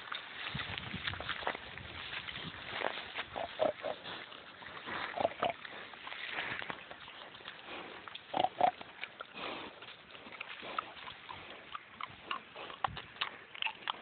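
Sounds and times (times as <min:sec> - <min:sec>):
pigs grunting: 0:03.2 - 0:06.0, 0:07.3 - 0:14.0.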